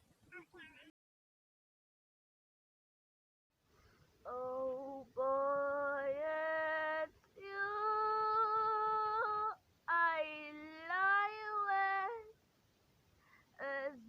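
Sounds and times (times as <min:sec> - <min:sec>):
woman singing unaccompanied: 0:04.2 - 0:12.4, 0:13.6 - 0:14.0.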